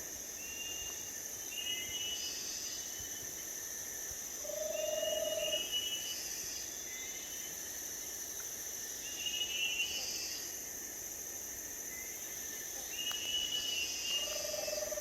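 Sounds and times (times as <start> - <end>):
insects droning: 0.0 - 15.0.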